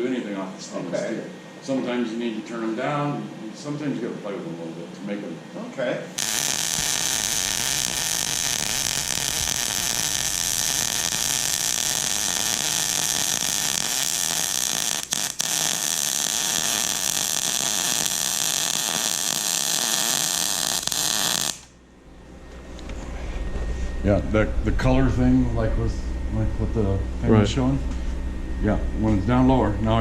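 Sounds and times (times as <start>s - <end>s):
welding arc hissing crackle: 6.1s - 21.8s.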